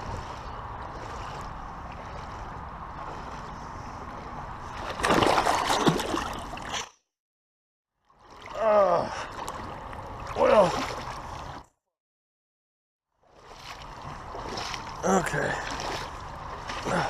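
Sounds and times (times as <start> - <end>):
creek water running: 0.0 - 6.8, 8.2 - 11.6, 13.2 - 17.0
person splashing in water: 4.7 - 6.9, 8.2 - 11.6, 13.3 - 17.0.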